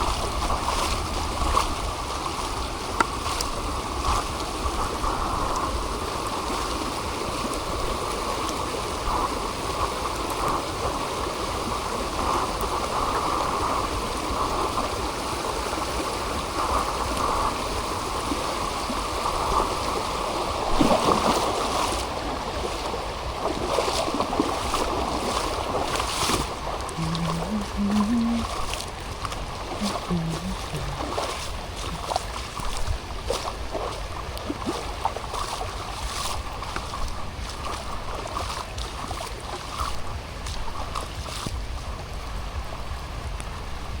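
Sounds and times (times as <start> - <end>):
flowing water: 0.0 - 44.0
heavy rain: 25.6 - 32.9.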